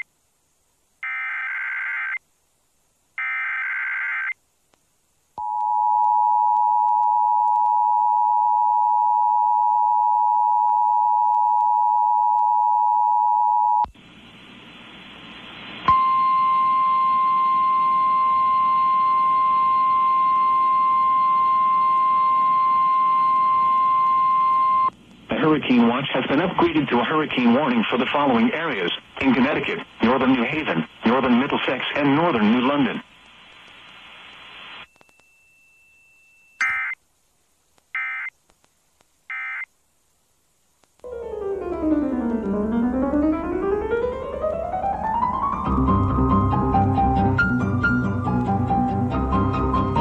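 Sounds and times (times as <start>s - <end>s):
radio hiss: 13.9s - 15.9s, 24.9s - 34.9s.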